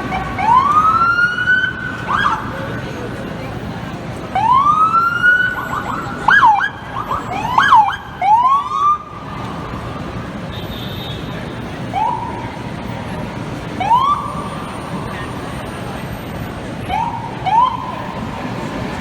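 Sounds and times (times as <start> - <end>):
fire truck siren: 0.0 - 2.8, 4.3 - 10.2, 11.8 - 12.8, 13.7 - 16.0, 16.8 - 19.0
street traffic noise: 0.0 - 19.0.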